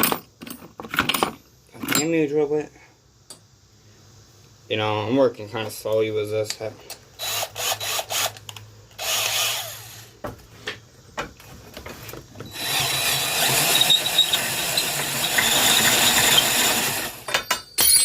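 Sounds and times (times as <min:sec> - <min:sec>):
electric drill boring into steel: 0:07.2 - 0:08.4, 0:09.0 - 0:10.1, 0:12.5 - 0:17.4.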